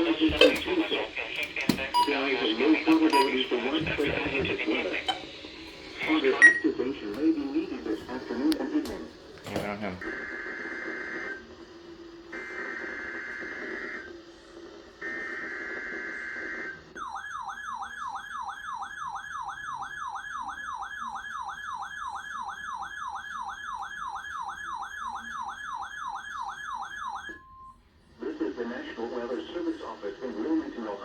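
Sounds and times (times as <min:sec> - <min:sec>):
warbling alarm siren: 0:12.3 - 0:14.2, 0:15.0 - 0:27.8.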